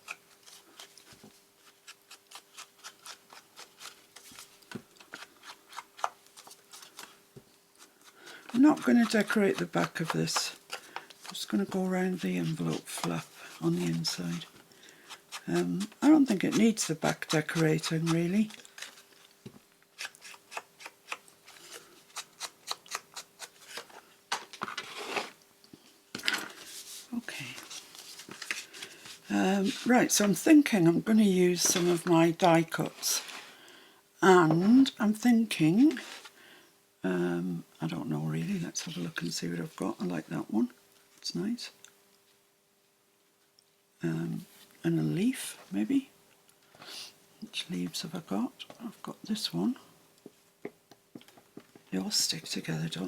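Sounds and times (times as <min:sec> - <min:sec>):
paper rustling: 0:08.3 - 0:19.4, 0:26.3 - 0:30.4.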